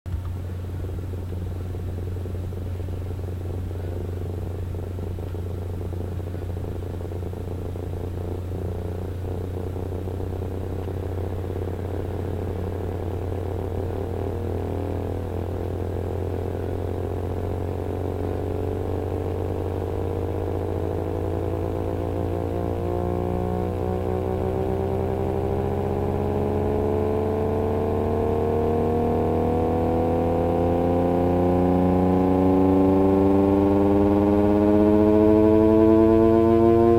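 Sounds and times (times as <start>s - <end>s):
low test tone hum: 0.1s - 36.9s.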